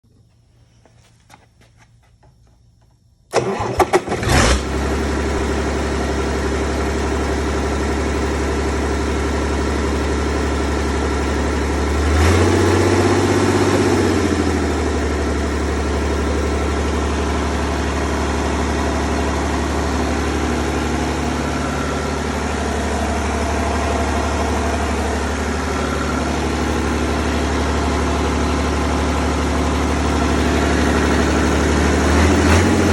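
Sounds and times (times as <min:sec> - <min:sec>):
diesel engine revving: 0:03.3 - 0:32.9
diesel engine starting and idling: 0:03.3 - 0:32.9.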